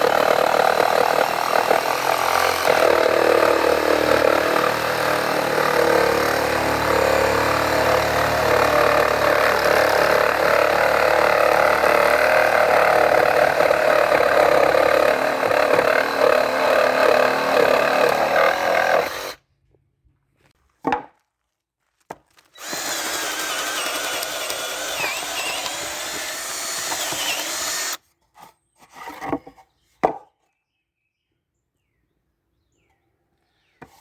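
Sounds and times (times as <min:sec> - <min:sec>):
power saw cutting wood: 0:00.0 - 0:19.4, 0:22.6 - 0:28.0.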